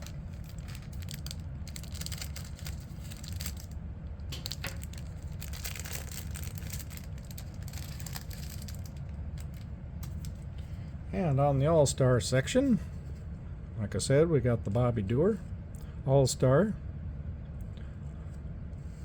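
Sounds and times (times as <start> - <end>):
plastic wrapper crinkling and tearing: 0.0 - 10.4
steady low hum: 0.0 - 19.0.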